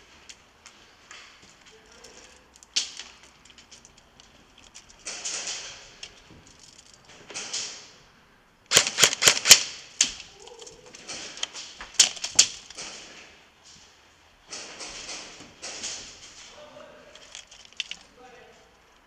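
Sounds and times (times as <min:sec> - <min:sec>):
airsoft gun shots: 0:08.7 - 0:09.8.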